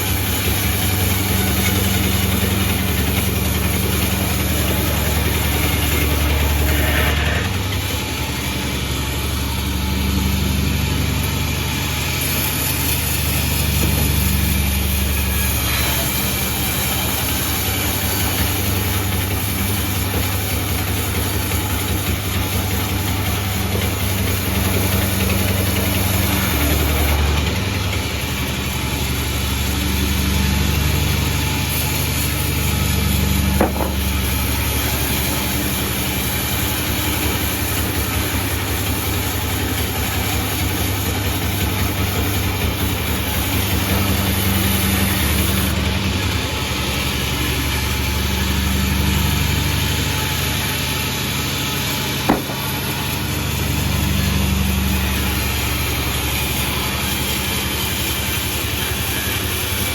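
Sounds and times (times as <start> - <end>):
sawmill engine humming: 0.0 - 59.9
sharp knock: 33.6 - 34.1, 52.3 - 52.8.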